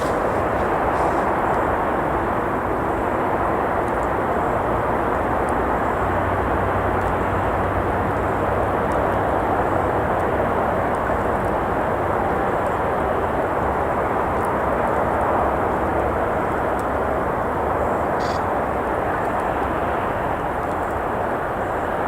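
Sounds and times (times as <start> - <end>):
campfire crackling: 0.0 - 1.5
road traffic rushing: 0.0 - 2.2.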